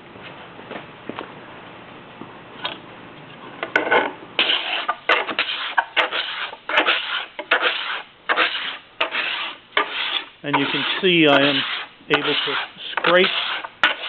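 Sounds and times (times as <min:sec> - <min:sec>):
card scraper rasping on wood: 0:04.4 - 0:14.0.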